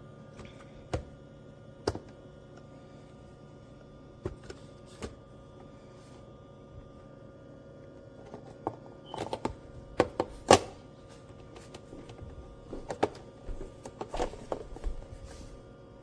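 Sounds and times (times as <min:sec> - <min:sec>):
faint steady hum: 0:00.0 - 0:16.0.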